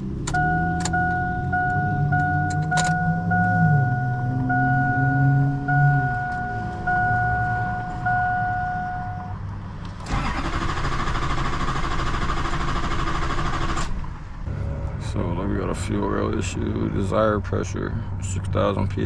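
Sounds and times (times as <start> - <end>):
dashboard warning chime: 0.3 - 9.4
starter cranking engine: 10.0 - 14.0.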